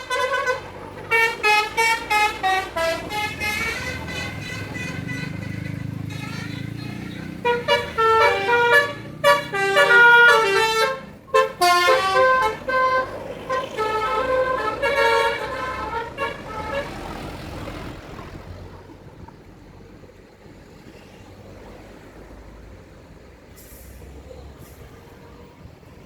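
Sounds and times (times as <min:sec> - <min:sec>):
multi-tone bus horn tune: 0:00.0 - 0:17.7
faint traffic rumble: 0:00.0 - 0:26.0.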